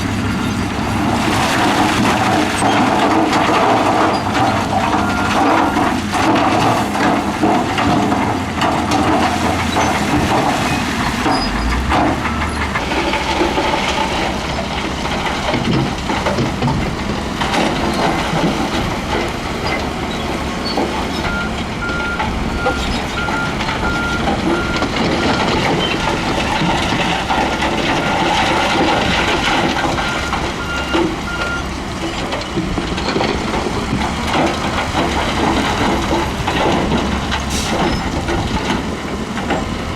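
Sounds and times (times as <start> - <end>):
heavy diesel machinery rattling: 0.0 - 39.9
reversing alarm beeping: 21.2 - 25.6, 30.0 - 31.6.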